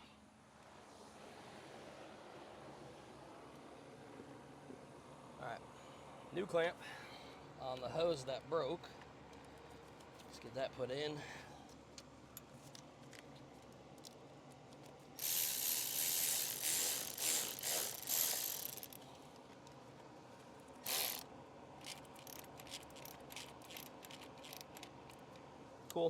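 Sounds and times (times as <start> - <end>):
socket ratchet clicking: 14.8 - 19.0, 20.8 - 21.2, 21.8 - 25.2.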